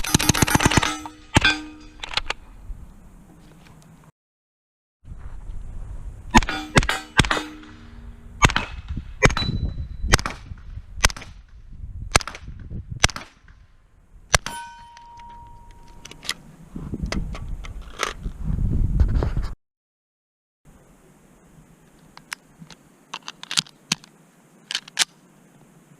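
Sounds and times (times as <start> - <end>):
single gunshots: 6.3 - 11.4, 12.1 - 13.5
brief ringing tone: 14.5 - 16.2.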